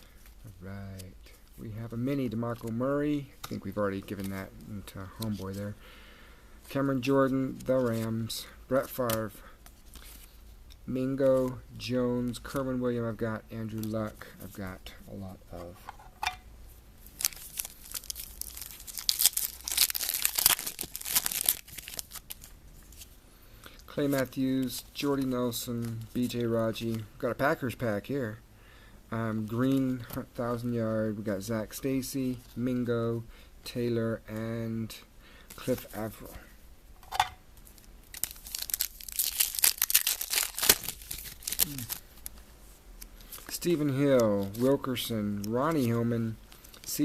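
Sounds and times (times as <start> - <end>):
wrapper tearing and crumpling: 17.1 - 22.5, 37.8 - 42.3.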